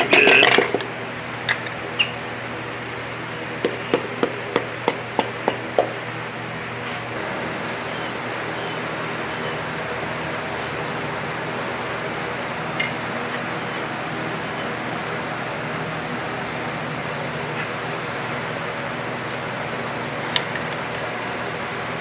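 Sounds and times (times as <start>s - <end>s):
steady background hum: 0.0s - 22.0s
tools tapping and clicking: 3.6s - 6.0s.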